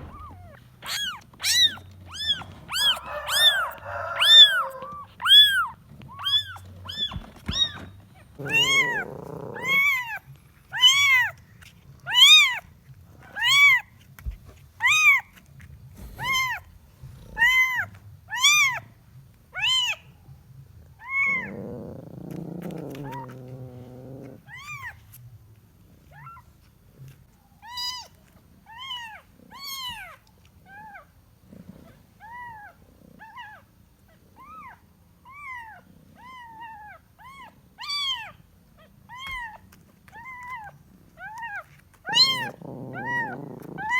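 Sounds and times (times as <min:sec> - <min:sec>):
kitten meowing: 0:00.0 - 0:11.4, 0:12.1 - 0:12.6, 0:13.4 - 0:13.8, 0:16.0 - 0:16.6, 0:17.3 - 0:18.8, 0:41.3 - 0:43.9.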